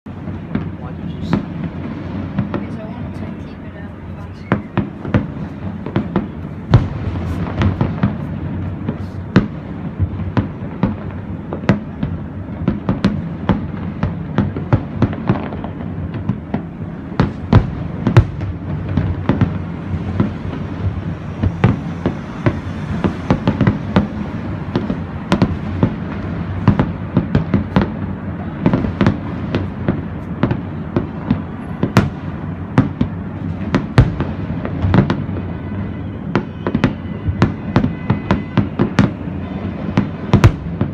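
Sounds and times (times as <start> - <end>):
fireworks bangs and pops: 0.1 - 40.9.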